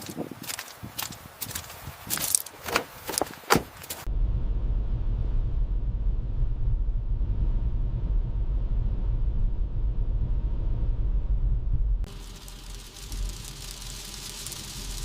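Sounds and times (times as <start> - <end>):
car road and engine rumble: 2.5 - 15.0
quiet hiss: 12.1 - 15.0.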